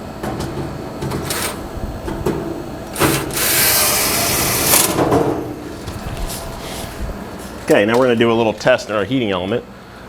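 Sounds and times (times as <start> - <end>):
cordless drill driving a screw: 3.0 - 5.0.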